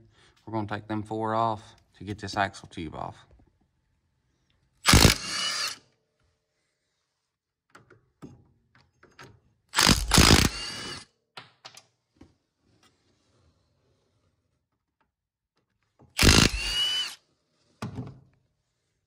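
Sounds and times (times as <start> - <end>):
impact wrench bursts: 4.8 - 5.8, 9.8 - 11.0, 16.2 - 17.2.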